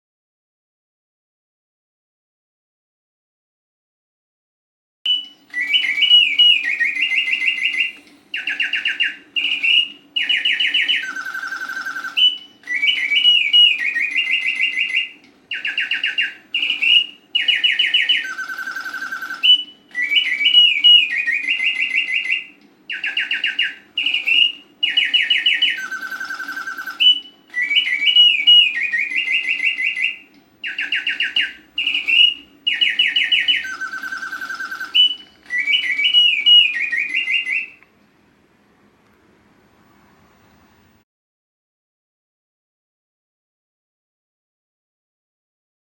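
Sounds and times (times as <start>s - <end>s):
mechanical birdsong whistle: 5.1s - 37.9s.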